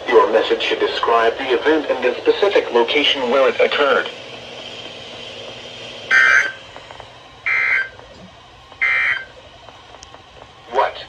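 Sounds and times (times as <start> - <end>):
two-tone data chirps: 7.5 - 7.9.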